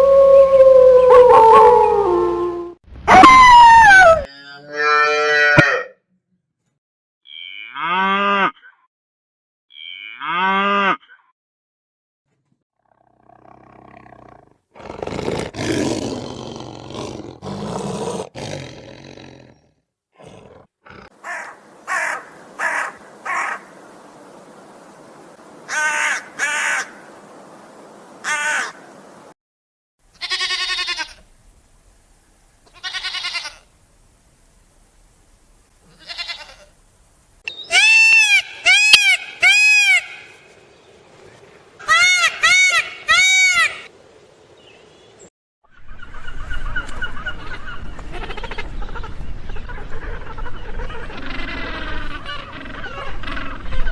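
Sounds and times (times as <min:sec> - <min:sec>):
low rough animal roar: 0:12.8 - 0:21.2.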